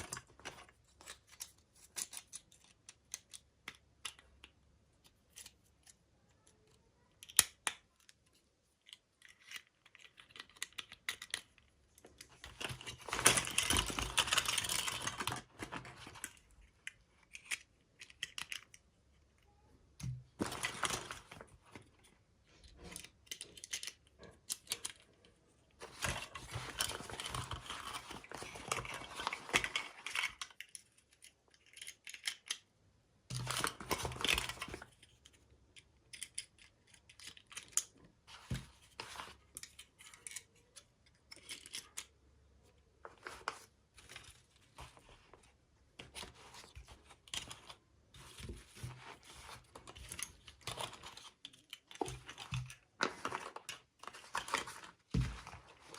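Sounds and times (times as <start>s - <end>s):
packaging rustling and tearing: 20.4s - 21.8s, 25.8s - 30.4s.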